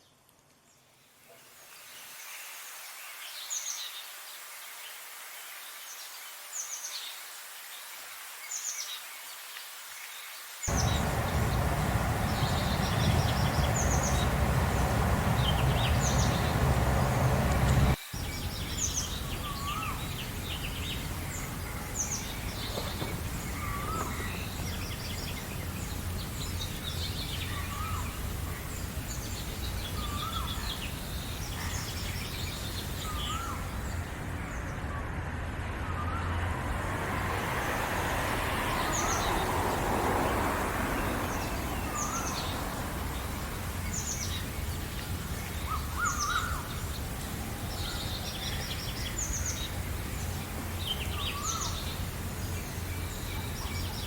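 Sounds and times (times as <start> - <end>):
background hiss: 0.0 - 34.8
low rumble: 10.7 - 18.0
birds chirping and singing: 10.7 - 25.0.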